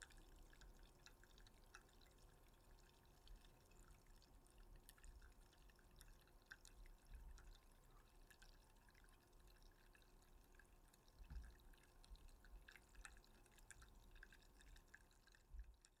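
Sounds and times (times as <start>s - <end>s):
fine crackling and dripping: 0.0s - 16.0s.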